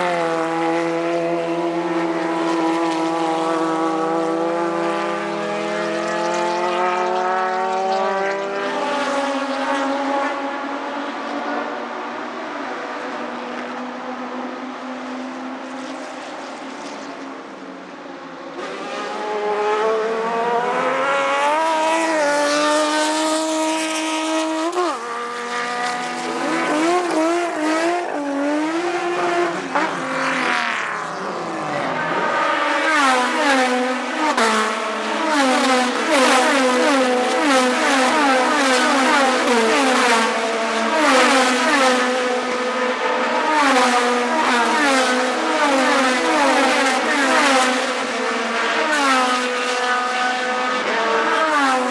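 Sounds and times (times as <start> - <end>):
race car engine revving: 18.5 - 51.9.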